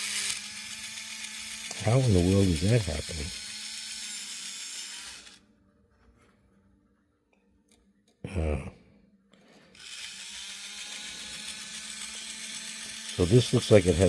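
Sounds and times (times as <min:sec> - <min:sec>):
small electric motor whirring: 0:00.0 - 0:05.5, 0:09.6 - 0:14.0.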